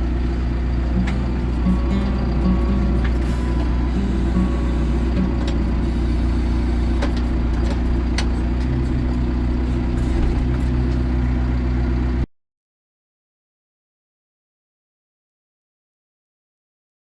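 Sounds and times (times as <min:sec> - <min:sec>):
tractor engine droning: 0:00.0 - 0:12.3.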